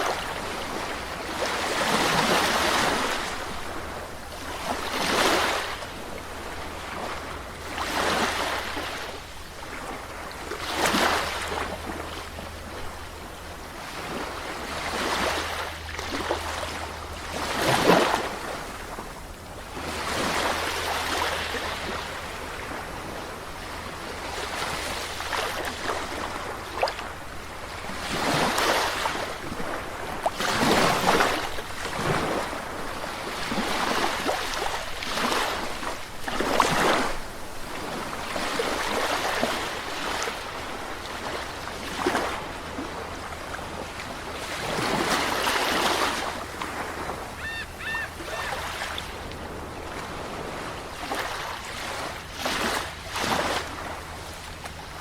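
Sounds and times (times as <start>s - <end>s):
sea waves breaking on shore: 0.0s - 55.0s
short high calls: 47.3s - 49.0s.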